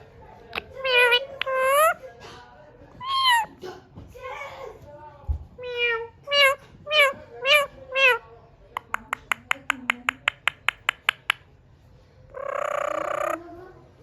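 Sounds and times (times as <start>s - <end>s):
parrot meow-like calls: 5.6s - 8.2s, 12.3s - 13.4s
parrot harsh squawk: 5.7s - 8.2s, 12.3s - 13.4s
sharp clicks: 8.8s - 11.4s.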